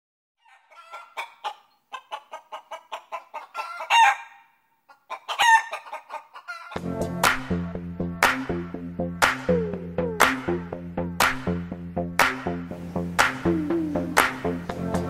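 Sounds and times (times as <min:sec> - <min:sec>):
chicken calling: 0:00.4 - 0:06.8, 0:13.2 - 0:15.0
chicken clucking: 0:00.4 - 0:06.8.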